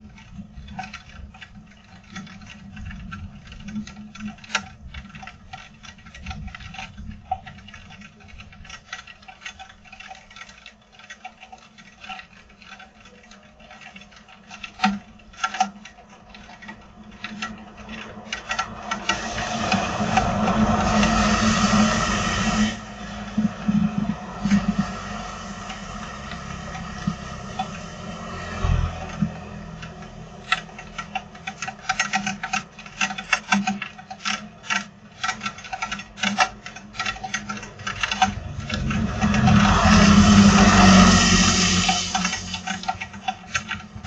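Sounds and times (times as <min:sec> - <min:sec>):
steady rushing noise: 0:16.1 - 0:44.0
low rumble: 0:18.1 - 0:30.5, 0:37.6 - 0:44.0.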